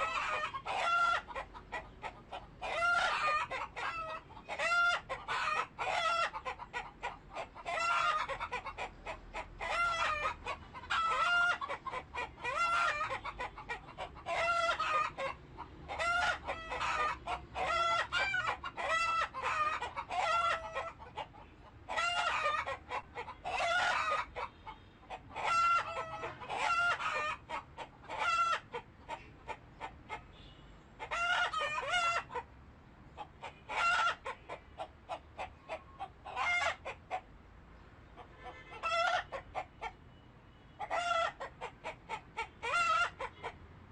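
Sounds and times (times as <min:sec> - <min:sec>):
roosters crowing: 0:00.0 - 0:01.8, 0:02.6 - 0:21.0, 0:21.9 - 0:28.7, 0:31.0 - 0:32.4, 0:33.7 - 0:34.3, 0:36.3 - 0:37.0, 0:38.5 - 0:39.5, 0:42.4 - 0:43.6
chickens clucking: 0:00.0 - 0:37.4, 0:38.0 - 0:43.7.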